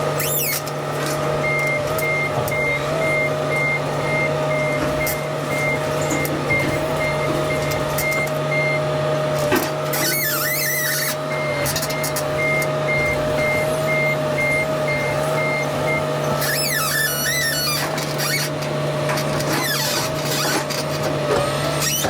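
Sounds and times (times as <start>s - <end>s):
heavy equipment engine running: 0.0s - 22.0s
high squeals: 0.2s - 0.6s, 9.9s - 11.2s, 16.4s - 18.6s
backup alarm beeping: 1.4s - 8.9s, 10.0s - 17.8s.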